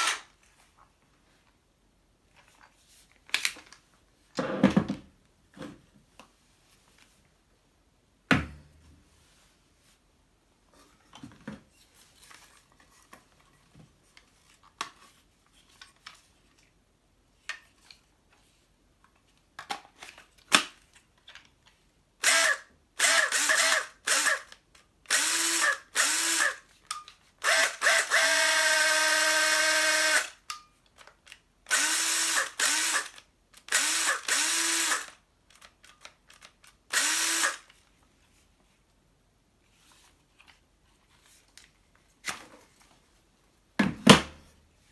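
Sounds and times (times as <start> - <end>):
cordless drill motor whining: 22.2 - 24.5, 25.1 - 26.6, 27.4 - 30.4, 31.7 - 35.2, 36.9 - 37.7.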